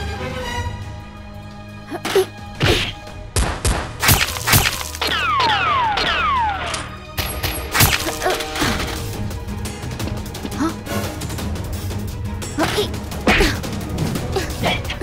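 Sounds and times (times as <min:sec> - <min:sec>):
background music: 0:00.0 - 0:15.0
sharp hits and thuds: 0:02.6 - 0:05.2.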